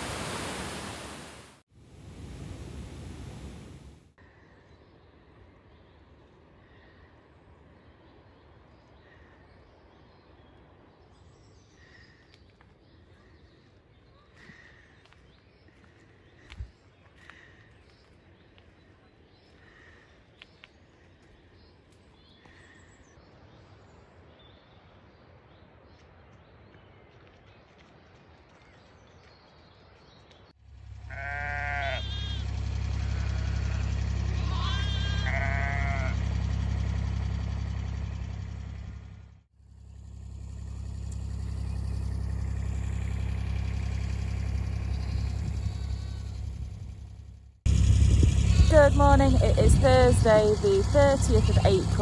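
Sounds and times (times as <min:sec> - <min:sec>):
low engine-like rumble: 0:00.0 - 0:10.9, 0:30.6 - 0:52.0
outdoor ambience: 0:00.0 - 0:52.0
distant bird calls: 0:31.0 - 0:39.2, 0:40.4 - 0:52.0.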